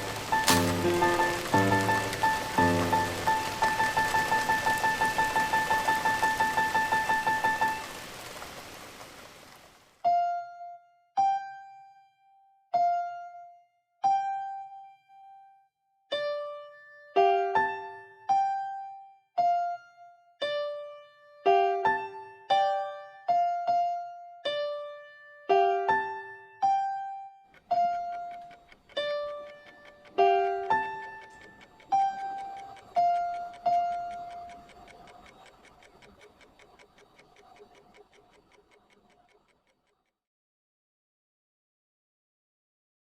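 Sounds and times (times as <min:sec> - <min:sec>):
slow keyboard melody: 0:00.0 - 0:07.9, 0:10.0 - 0:35.2.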